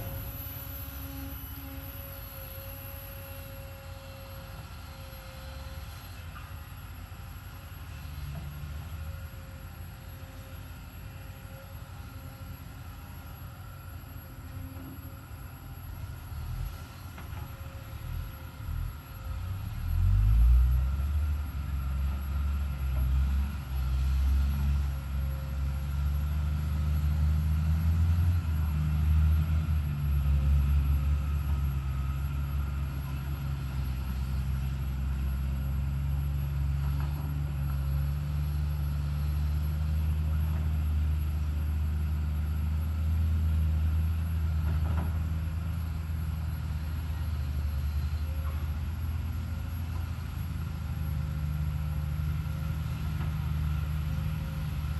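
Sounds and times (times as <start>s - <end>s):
excavator diesel engine running: 0.0s - 54.9s.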